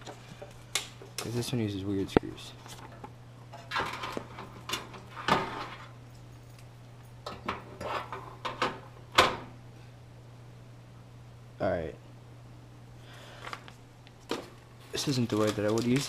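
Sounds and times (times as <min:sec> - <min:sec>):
faint low hum: 0:00.0 - 0:16.0
computer parts rustling and knocking: 0:02.6 - 0:05.9, 0:14.2 - 0:16.0.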